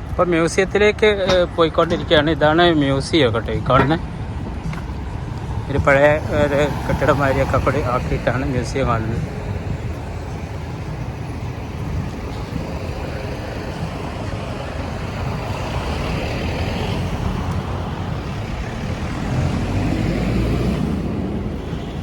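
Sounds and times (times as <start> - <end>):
road traffic rumble: 0.0 - 22.0
vehicle passing by: 15.4 - 22.0.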